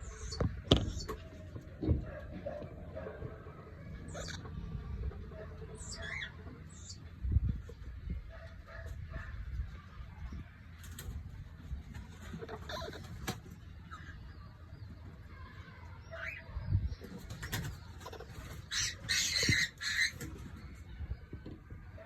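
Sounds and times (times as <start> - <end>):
cockatiels calling: 4.1 - 4.6, 5.4 - 7.0, 12.4 - 14.2, 17.6 - 20.3
harsh bird squawks: 4.1 - 4.6, 18.2 - 20.2.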